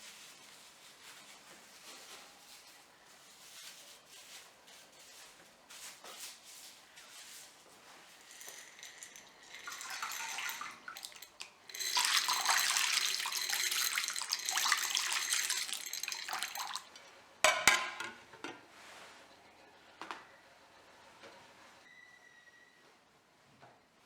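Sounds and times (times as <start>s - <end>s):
water running from tap into sink: 8.3s - 17.0s.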